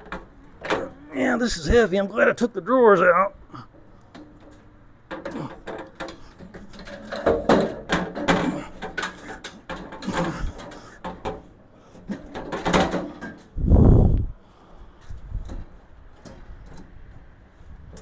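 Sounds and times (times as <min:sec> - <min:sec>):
steel tool box clunking and scraping: 0:03.8 - 0:13.5.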